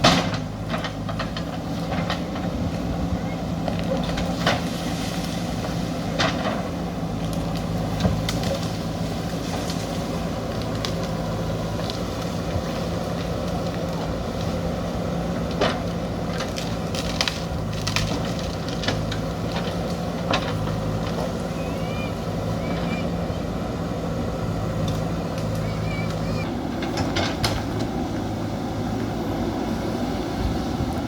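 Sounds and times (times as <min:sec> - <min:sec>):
diesel engine running under load: 0:00.0 - 0:31.0
sharp cracks and knocks: 0:03.6 - 0:14.7, 0:15.4 - 0:21.4.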